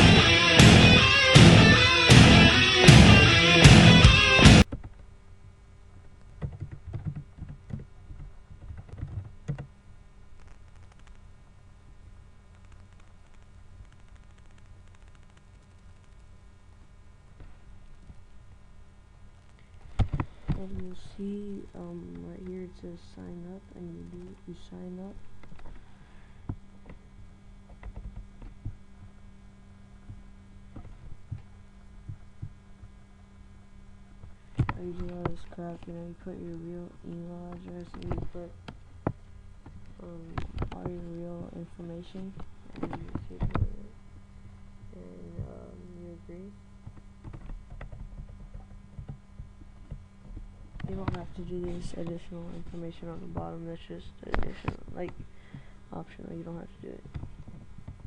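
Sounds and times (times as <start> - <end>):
low electrical hum: 0.0 - 58.0
faint clicks and knocks: 6.0 - 11.3, 12.5 - 16.4, 46.8 - 53.5.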